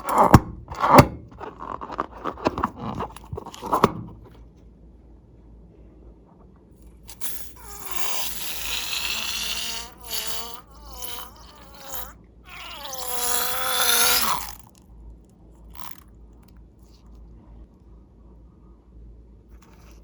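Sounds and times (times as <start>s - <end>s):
rubber balloon squealing: 7.1s - 14.7s.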